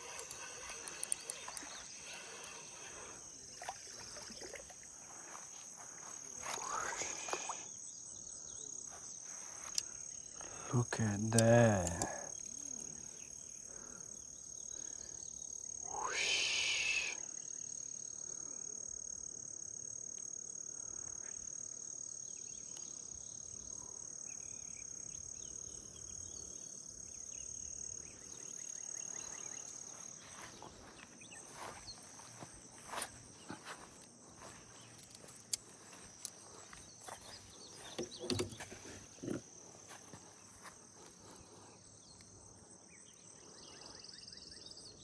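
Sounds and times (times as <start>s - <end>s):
high-pitched insect trill: 0.0s - 45.0s
sharp clicks: 11.3s - 12.1s.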